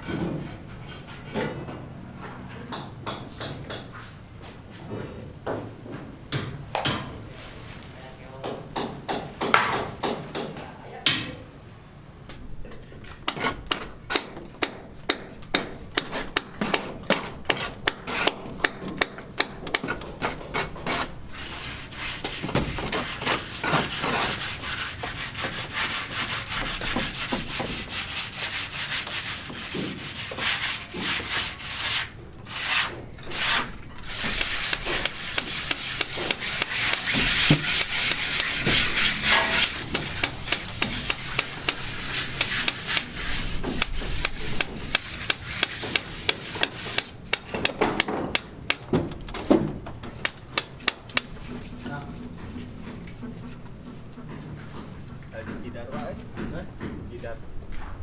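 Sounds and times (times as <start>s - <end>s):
hand tool rasping and scraping: 13.3s - 49.3s, 50.1s - 56.2s
fast even knocks: 34.1s - 51.6s.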